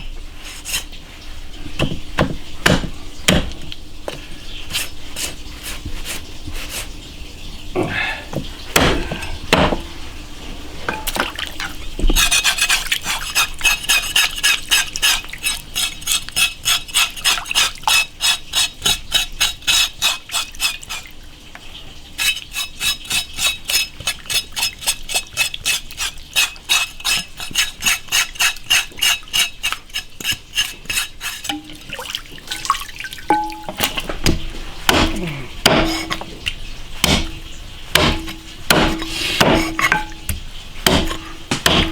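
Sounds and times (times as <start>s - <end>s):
metal blade sawing: 12.2s - 21.1s, 22.2s - 31.9s, 34.9s - 36.3s, 38.0s - 41.9s.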